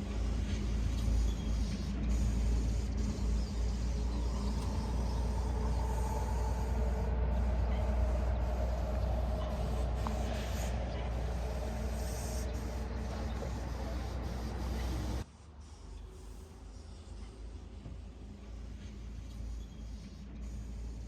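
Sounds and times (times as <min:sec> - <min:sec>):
low vehicle rumble: 0:00.0 - 0:15.2.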